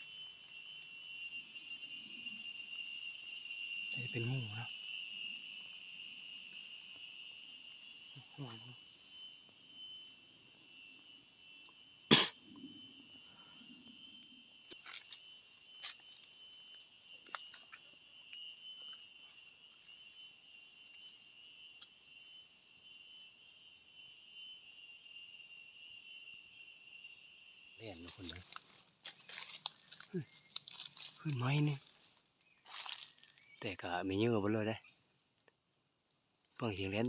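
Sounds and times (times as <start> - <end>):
forest insects chorus: 0.0 - 37.0
light snaps and rustles: 28.4 - 31.4.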